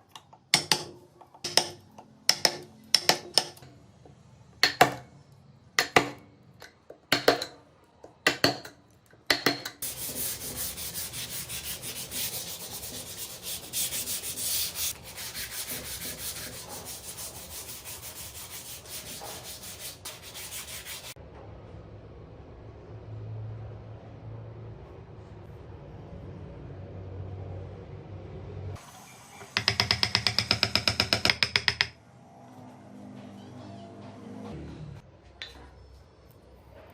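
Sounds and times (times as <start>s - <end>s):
wood being sanded by hand: 9.8s - 21.2s.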